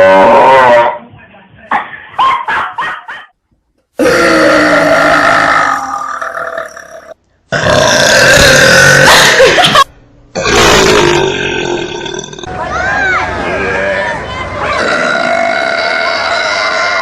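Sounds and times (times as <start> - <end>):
girls burping loudly: 4.0 - 9.6, 10.4 - 12.5, 14.8 - 17.0.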